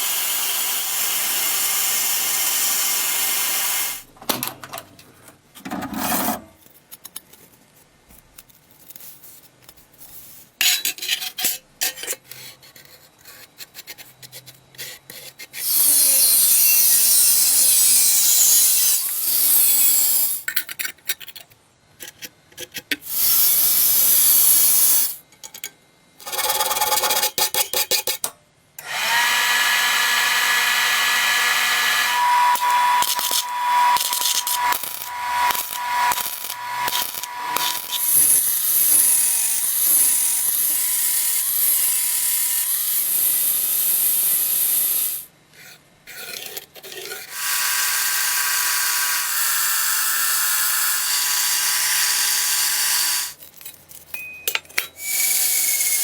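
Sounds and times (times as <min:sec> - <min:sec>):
power tool bursts: 0:00.0 - 0:04.0, 0:28.8 - 0:45.3, 0:47.3 - 0:53.4
power tool whine: 0:00.0 - 0:04.0, 0:15.6 - 0:20.4, 0:28.8 - 0:45.3, 0:47.3 - 0:53.4
scraping and rubbing on metal: 0:05.8 - 0:06.6, 0:45.6 - 0:47.3.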